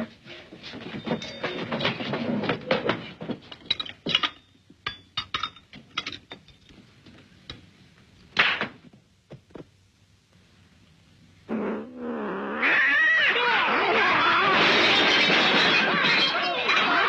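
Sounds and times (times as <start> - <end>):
knocks and clinks: 0.8 - 6.8, 14.6 - 17.0.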